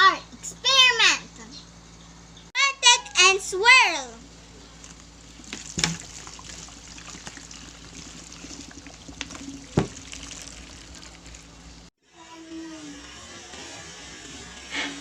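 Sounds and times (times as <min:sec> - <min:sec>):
water swirling and trickling: 0:04.7 - 0:11.9.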